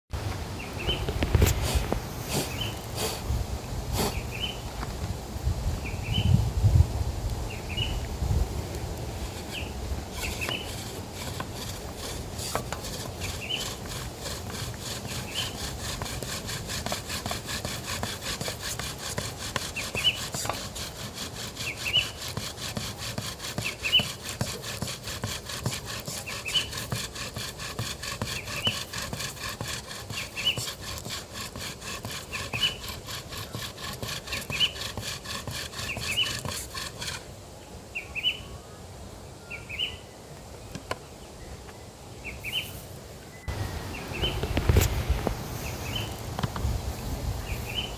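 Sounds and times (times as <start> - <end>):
bow drill spindle grinding wood: 9.1 - 37.3.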